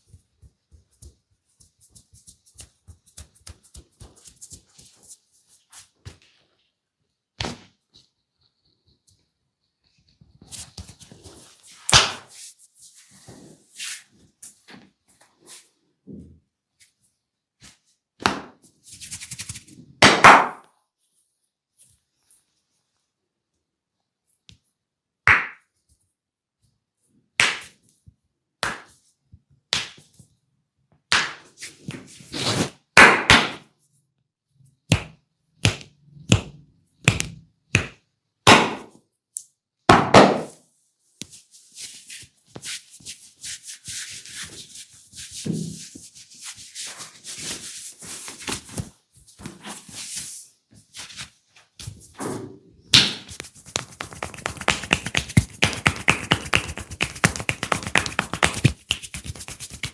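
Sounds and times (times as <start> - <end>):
hands slapping a head: 11.8 - 12.4, 18.2 - 18.6, 25.3 - 25.7, 27.4 - 27.8, 28.6 - 29.0, 29.7 - 30.2, 31.1 - 32.1, 34.9 - 39.0, 52.9 - 59.9
fingers scratching through hair: 53.3 - 59.9.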